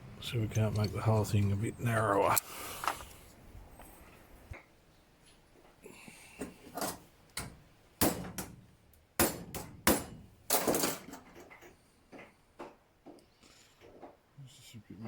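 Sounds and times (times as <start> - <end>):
hammer striking metal: 9.2 - 10.2.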